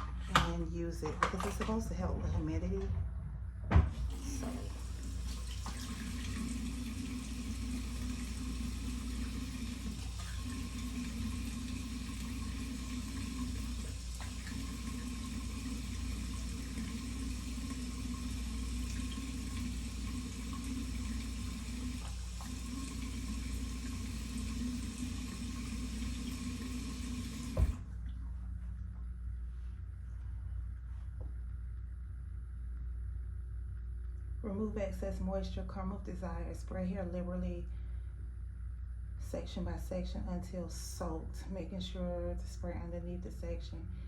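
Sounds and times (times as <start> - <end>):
water running from a tap: 3.9 - 27.8
tap shut off knock: 27.4 - 27.8.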